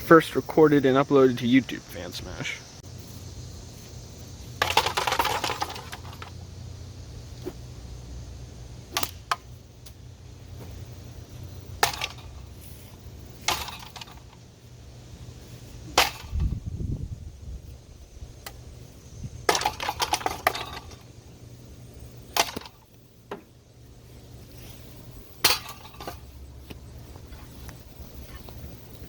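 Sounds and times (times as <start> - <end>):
steady low hum: 0.0 - 29.0
clattering crash: 4.6 - 6.3.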